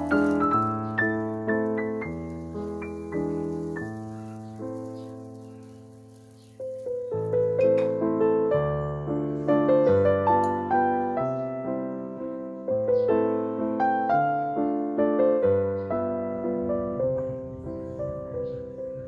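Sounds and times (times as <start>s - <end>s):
gentle piano music: 0.0s - 19.0s.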